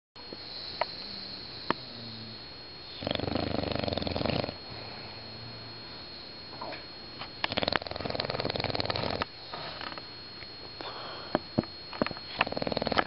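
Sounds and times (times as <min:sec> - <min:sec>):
dog snoring: 0:00.5 - 0:05.6, 0:07.4 - 0:09.8, 0:12.3 - 0:13.0.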